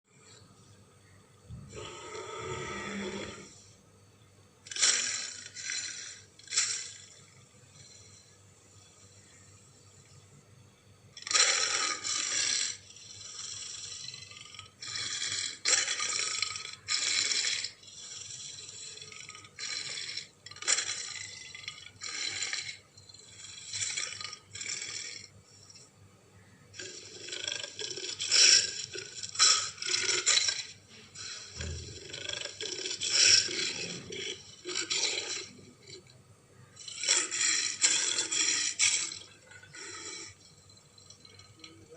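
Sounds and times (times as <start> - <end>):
big cat growling and snarling: 1.5 - 3.7, 26.8 - 36.1.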